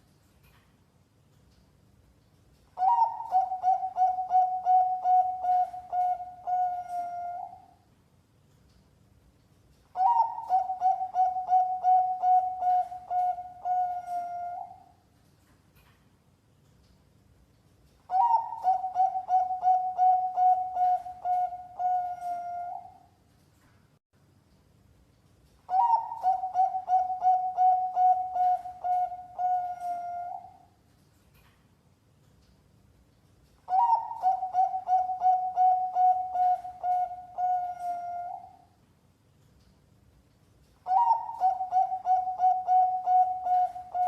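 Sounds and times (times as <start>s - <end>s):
dove cooing: 2.8s - 7.8s, 10.0s - 14.9s, 18.1s - 23.0s, 25.7s - 30.6s, 33.7s - 38.7s, 40.8s - 44.0s.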